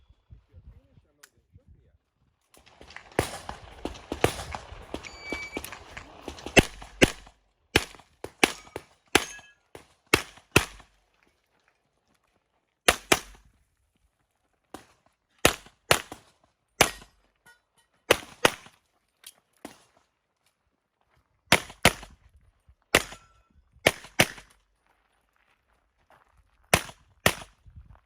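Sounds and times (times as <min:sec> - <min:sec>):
handgun shots: 0:02.8 - 0:09.5, 0:10.2 - 0:10.9, 0:12.9 - 0:13.4, 0:16.8 - 0:17.1, 0:22.9 - 0:24.5.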